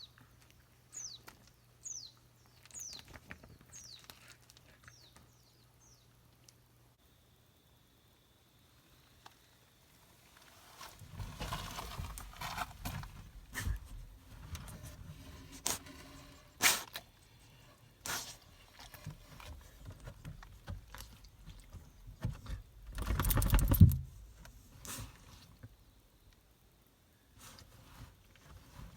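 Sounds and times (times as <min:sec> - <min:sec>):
scraping: 0:10.5 - 0:24.2.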